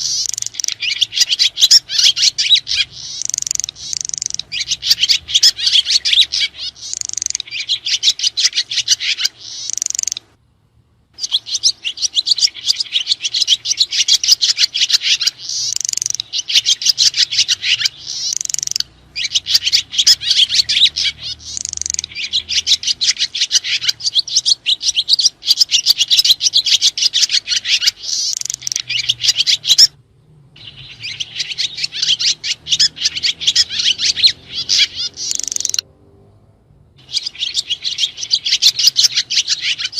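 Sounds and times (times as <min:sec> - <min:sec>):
swiftlets twittering: 0:00.0 - 0:10.2, 0:11.2 - 0:29.9, 0:30.6 - 0:35.8.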